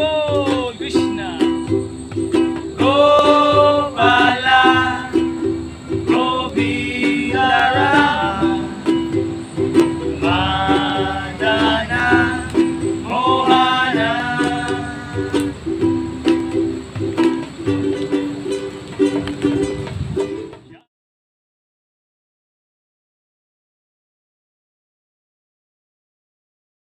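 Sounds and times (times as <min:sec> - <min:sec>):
strummed string instrument: 0:00.0 - 0:20.8
person singing a mantra: 0:02.8 - 0:05.3, 0:05.9 - 0:09.0, 0:10.1 - 0:15.5.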